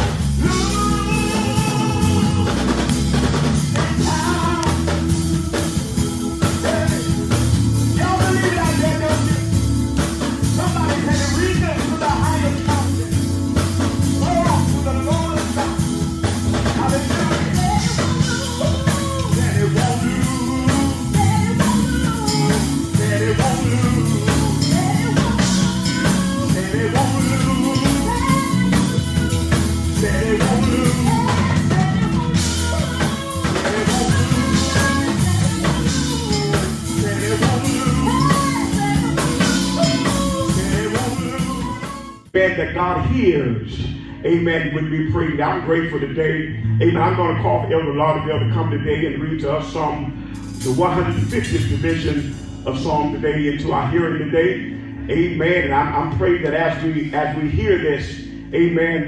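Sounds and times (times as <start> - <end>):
person singing: 0.0 - 42.4
gospel band playing: 0.0 - 59.0.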